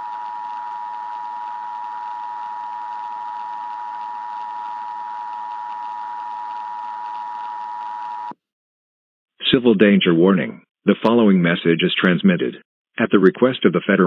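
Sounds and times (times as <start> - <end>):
static hiss: 0.0 - 8.3
two-tone alarm: 0.0 - 8.4.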